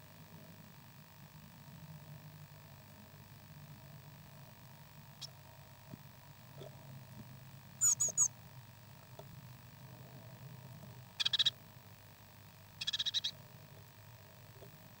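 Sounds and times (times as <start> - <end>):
hatchling birds peeping: 5.1 - 5.6, 7.8 - 8.4, 11.1 - 11.6, 12.7 - 13.5.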